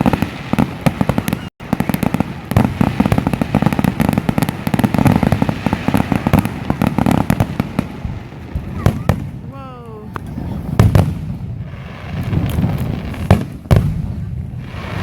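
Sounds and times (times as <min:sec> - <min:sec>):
fireworks crackling pops: 0:00.0 - 0:15.0.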